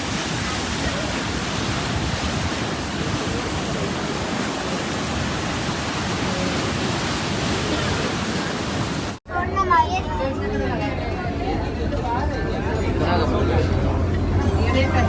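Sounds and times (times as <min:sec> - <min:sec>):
sea surf washing on beach: 0:00.0 - 0:09.2.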